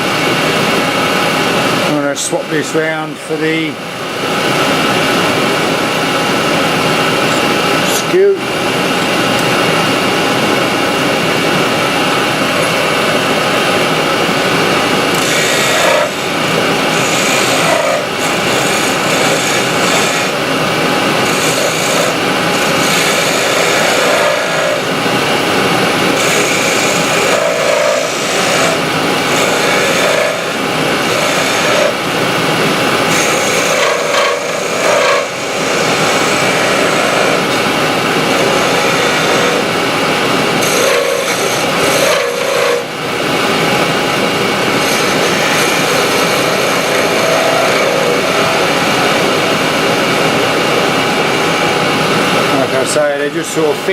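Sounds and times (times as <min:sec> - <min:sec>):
wood lathe running: 0:00.0 - 0:53.9
chisel cutting wood: 0:12.1 - 0:20.5, 0:21.1 - 0:32.0, 0:33.0 - 0:42.9, 0:44.5 - 0:49.6.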